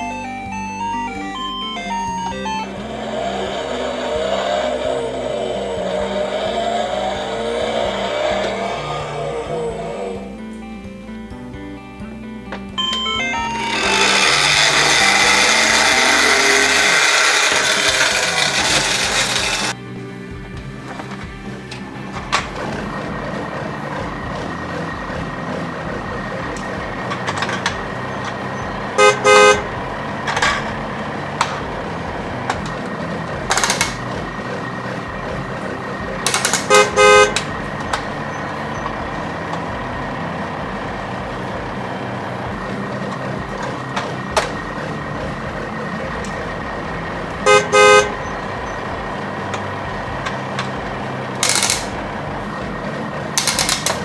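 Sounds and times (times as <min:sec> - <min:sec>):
toy car horn double beeps: 0:00.0 - 0:05.2, 0:12.8 - 0:19.8, 0:27.2 - 0:30.9, 0:36.3 - 0:39.1, 0:47.3 - 0:48.9.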